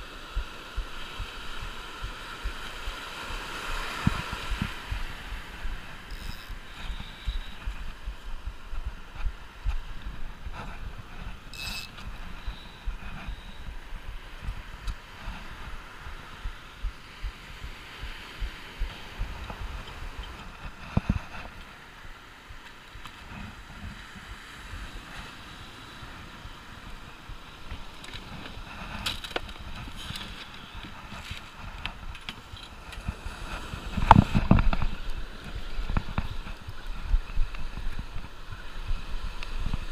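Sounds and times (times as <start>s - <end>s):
surf washing on beach: 0.0s - 39.9s
fishing gear knocks and clicks: 6.0s - 7.7s, 28.0s - 33.1s.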